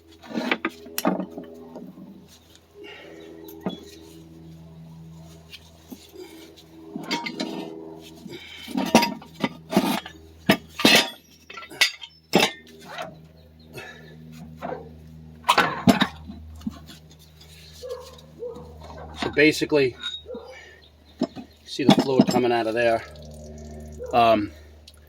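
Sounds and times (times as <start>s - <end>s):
low hum: 0.0s - 25.0s
metal tools clinking and knocking: 7.0s - 7.7s, 8.6s - 13.1s, 15.5s - 16.4s, 17.4s - 20.5s, 21.2s - 23.2s.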